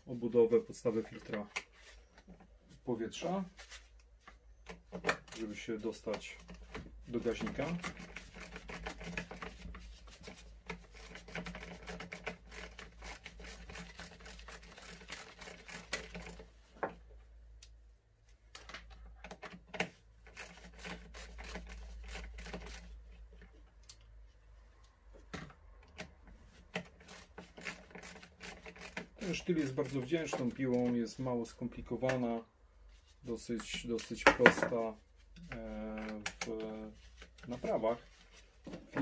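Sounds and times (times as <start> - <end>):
tools and plastic parts rattling: 4.7 - 17.0, 18.5 - 23.9.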